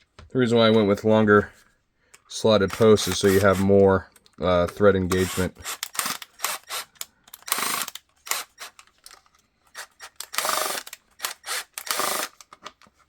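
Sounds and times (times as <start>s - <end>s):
hand tool ratcheting clicks: 5.1s - 9.2s.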